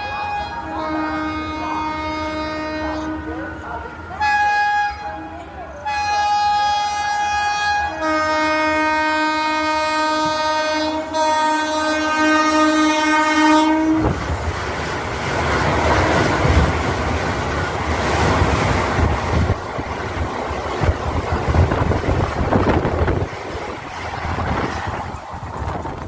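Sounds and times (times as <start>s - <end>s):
train horn blast: 0.0s - 3.5s, 4.1s - 14.2s
train rushing past: 0.0s - 26.0s.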